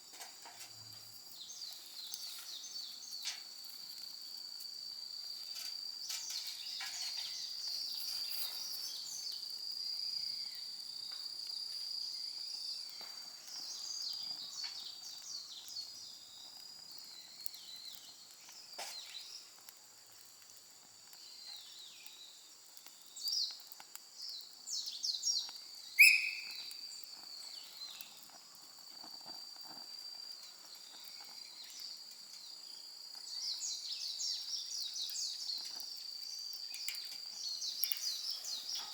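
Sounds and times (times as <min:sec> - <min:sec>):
high insect trill: 0:24.2 - 0:38.9
bird chirps: 0:24.8 - 0:28.1
faint clicks: 0:35.0 - 0:38.9.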